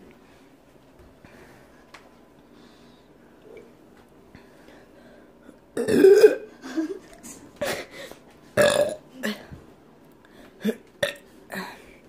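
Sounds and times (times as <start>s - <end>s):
person burping: 5.8s - 6.6s, 8.6s - 9.5s, 10.6s - 11.8s.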